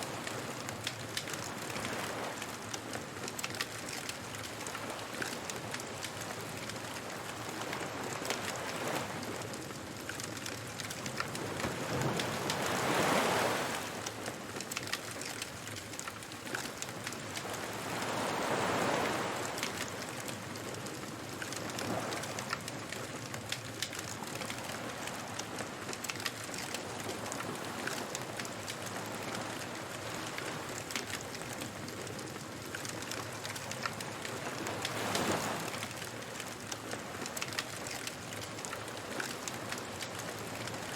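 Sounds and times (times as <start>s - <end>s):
waves washing in: 0.0s - 23.4s, 24.1s - 40.9s
fire crackling: 0.1s - 7.8s, 30.2s - 40.8s.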